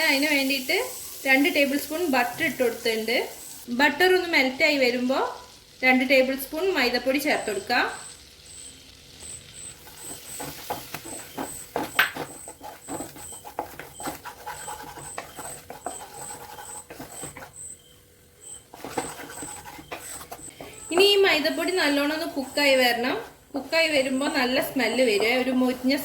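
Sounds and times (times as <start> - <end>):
spoon stirring and scraping a pan: 9.2 - 26.0.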